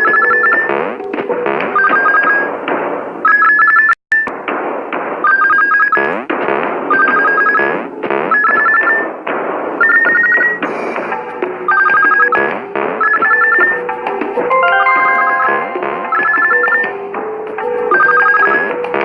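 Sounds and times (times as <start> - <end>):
electronic warbling trill: 14.5 - 16.7.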